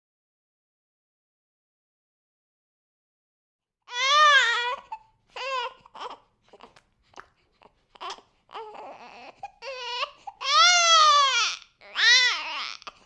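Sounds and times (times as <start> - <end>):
baby crying: 3.9 - 6.8, 7.6 - 13.0
baby whimpering: 3.9 - 13.0.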